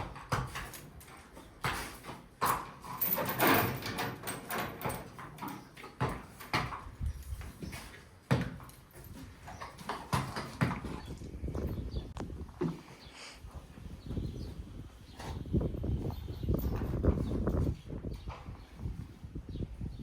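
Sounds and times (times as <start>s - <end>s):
horse hooves knocking: 0.0s - 11.9s
hooves scraping: 0.0s - 20.0s.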